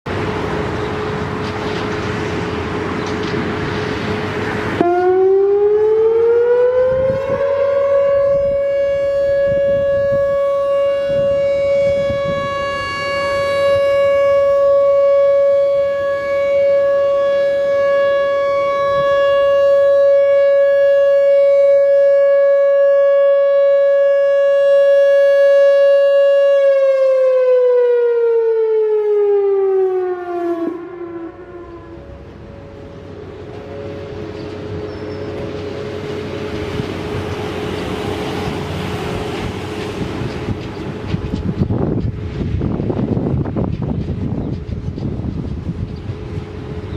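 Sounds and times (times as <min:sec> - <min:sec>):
rushing noise: 0:00.1 - 0:05.4, 0:30.8 - 0:46.9
warning siren steady tone: 0:00.1 - 0:46.9.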